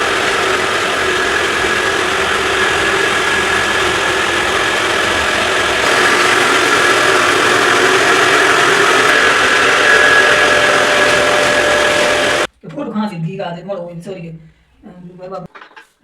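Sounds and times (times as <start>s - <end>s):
motor running loudly: 0.0s - 12.5s.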